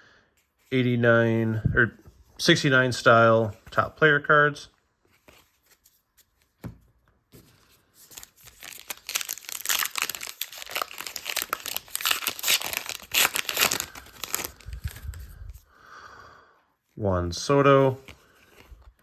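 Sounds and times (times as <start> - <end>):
plastic wrapper tearing and crinkling: 8.0 - 15.6.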